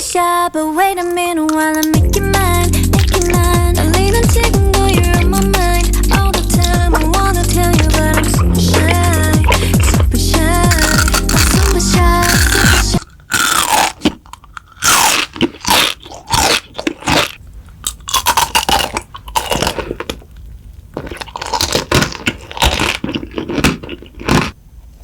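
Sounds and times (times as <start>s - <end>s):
pop music: 0.0s - 13.0s
crunchy food being chewed: 0.8s - 2.2s, 2.9s - 24.6s.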